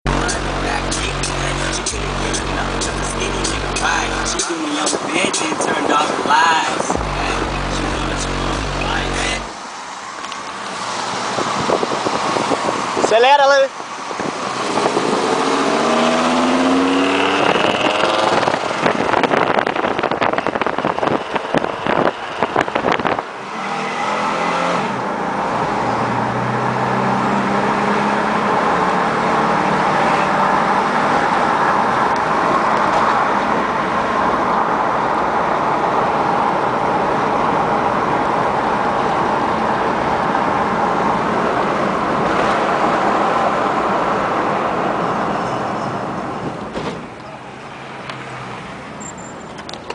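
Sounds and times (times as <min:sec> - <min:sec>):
car engine revving: 0:00.1 - 0:13.2, 0:13.8 - 0:49.1.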